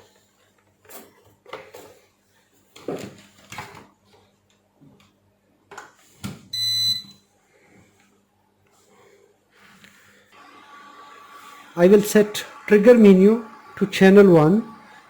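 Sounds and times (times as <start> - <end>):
induction cooker beep: 6.5 - 7.3.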